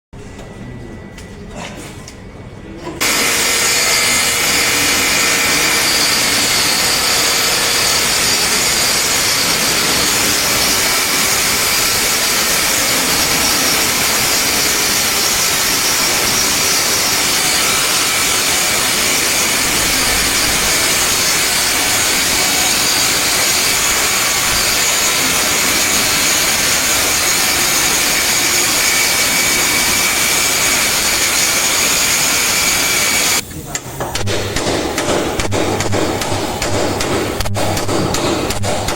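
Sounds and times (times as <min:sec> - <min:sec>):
power tool whining: 0:03.0 - 0:33.4.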